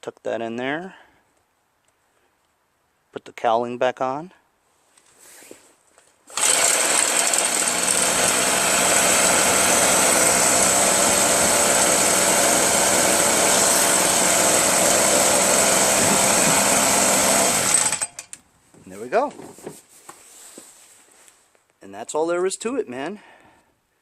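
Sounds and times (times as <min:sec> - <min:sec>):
leaf blower running: 0:06.3 - 0:18.2.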